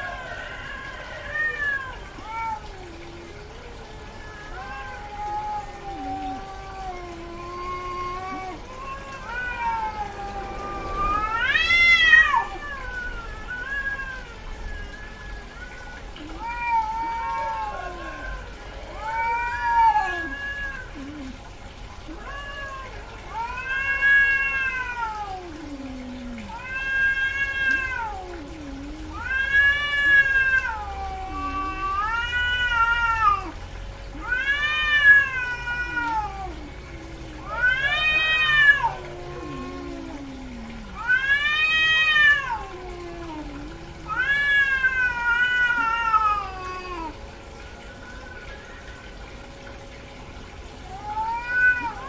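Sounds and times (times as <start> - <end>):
cat yowling: 0.0 - 21.4, 22.1 - 47.3, 50.8 - 52.0.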